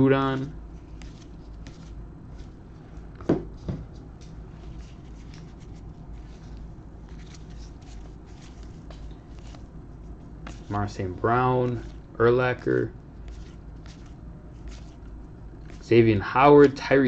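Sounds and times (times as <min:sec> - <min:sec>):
low steady hum: 0:00.0 - 0:17.0
trading cards clicking and rustling: 0:00.2 - 0:02.5, 0:04.2 - 0:09.7, 0:10.4 - 0:16.0.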